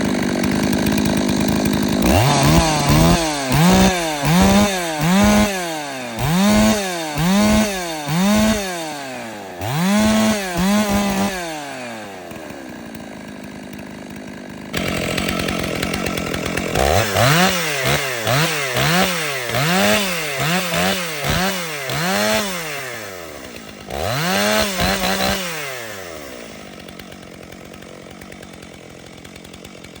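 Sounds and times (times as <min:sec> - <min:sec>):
chainsaws idling and revving: 0:00.0 - 0:30.0.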